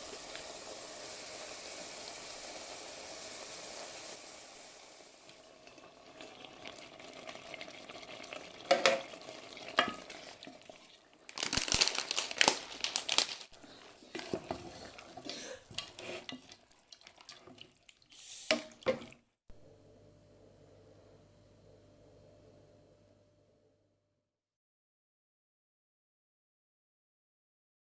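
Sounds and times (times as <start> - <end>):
food frying in a pan: 0.0 - 19.1
utensil scraping a pan: 13.6 - 17.7
faint steady hum: 19.5 - 23.8.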